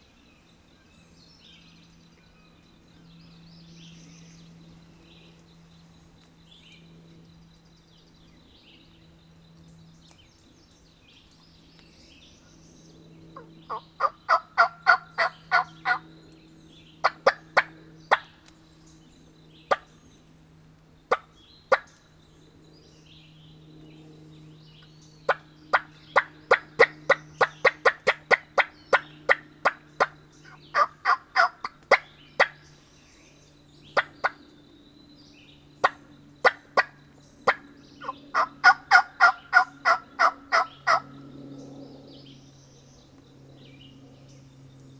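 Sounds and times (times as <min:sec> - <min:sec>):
faint songbirds singing: 0:00.0 - 0:44.9
turkey call yelping: 0:13.4 - 0:16.0, 0:29.3 - 0:32.0, 0:37.5 - 0:41.0.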